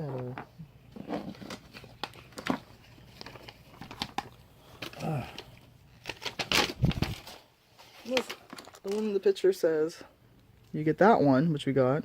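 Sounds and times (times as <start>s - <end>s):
plastic packaging crinkling: 1.0s - 9.3s.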